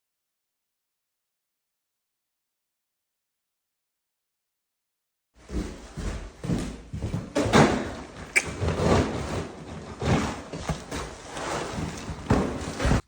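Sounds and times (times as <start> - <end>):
scraping and rustling: 7.8 - 13.0.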